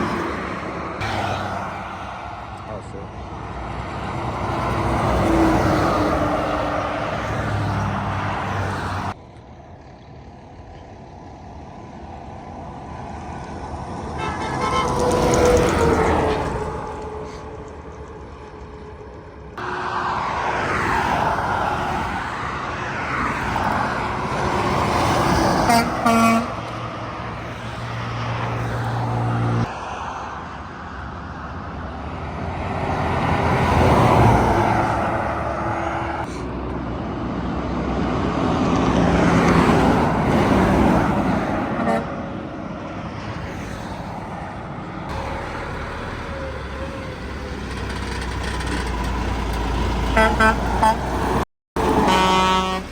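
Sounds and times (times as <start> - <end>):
highway traffic with trucks passing: 0.0 - 52.9
truck air horn blasts: 14.2 - 17.4, 25.5 - 26.7, 41.8 - 42.2, 50.1 - 52.9.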